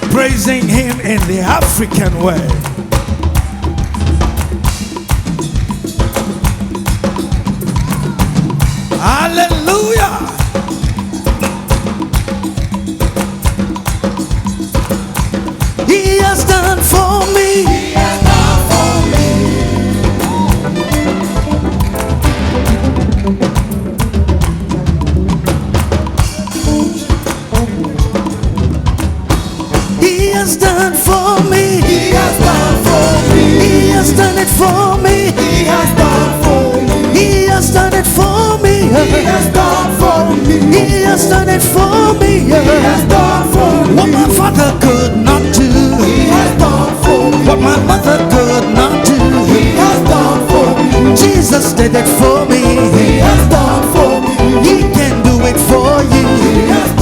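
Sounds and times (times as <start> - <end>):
band playing driving beat: 0.0 - 57.0
voices singing: 14.0 - 22.2, 29.7 - 57.0.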